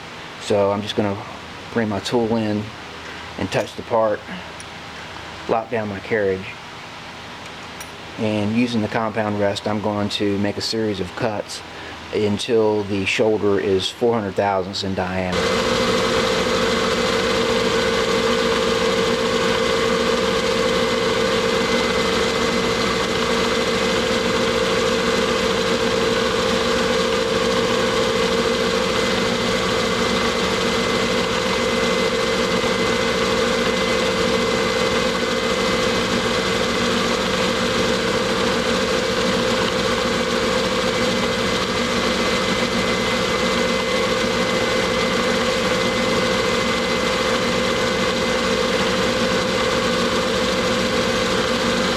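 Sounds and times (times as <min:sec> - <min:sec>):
metal lathe humming with whine: 0:15.3 - 0:51.9.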